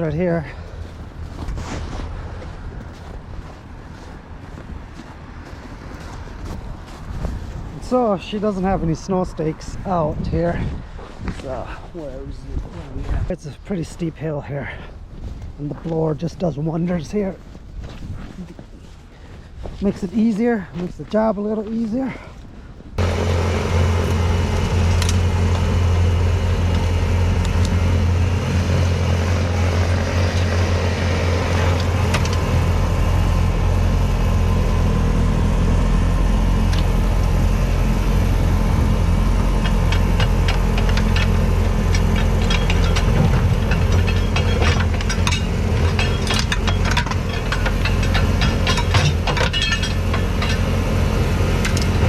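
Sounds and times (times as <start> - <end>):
snowblower engine running: 23.0 - 52.0
sharp rattling clicks: 39.3 - 52.0.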